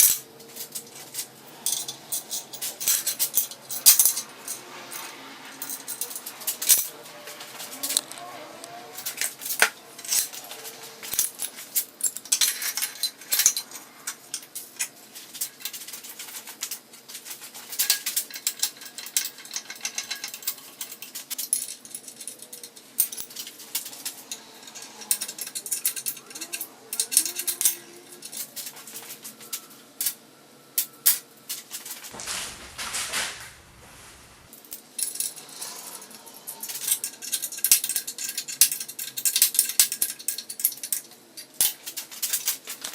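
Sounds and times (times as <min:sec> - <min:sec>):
metal tools clinking and clanking: 0:00.0 - 0:08.3, 0:08.9 - 0:30.2, 0:30.8 - 0:42.9
brief rough noise: 0:32.1 - 0:34.6.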